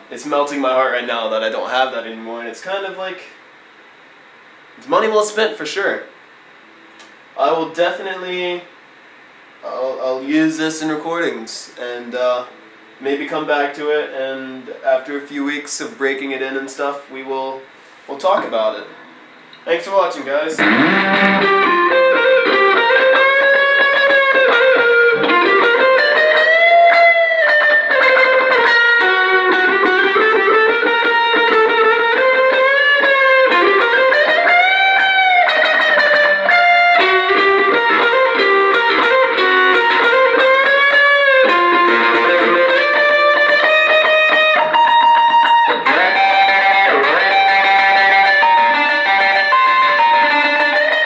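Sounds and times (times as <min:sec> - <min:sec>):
electric guitar lead with bends: 0:20.6 - 0:51.0.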